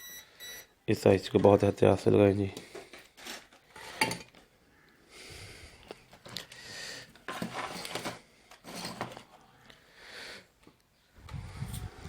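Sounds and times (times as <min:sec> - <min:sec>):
small tools clicking and scraping: 0:06.1 - 0:09.4.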